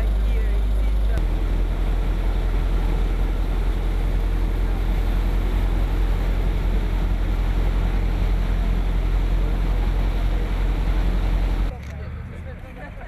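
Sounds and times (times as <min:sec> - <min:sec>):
engine low rumble: 0:00.0 - 0:13.0.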